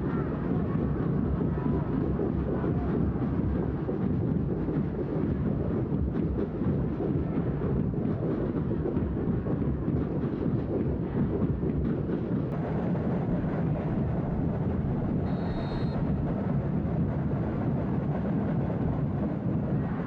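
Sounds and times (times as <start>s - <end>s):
stadium crowd roar: 12.6s - 18.2s
high whistle tone: 15.2s - 16.1s.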